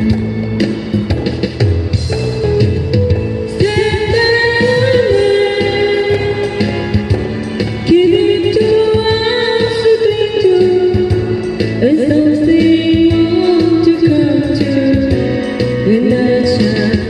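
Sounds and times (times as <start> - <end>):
live pop band accompaniment: 0.0 - 17.0.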